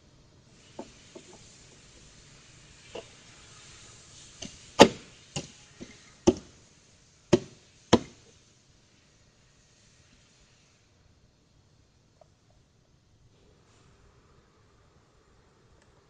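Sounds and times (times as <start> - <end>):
sharp knocks: 4.8 - 6.5, 7.3 - 8.2.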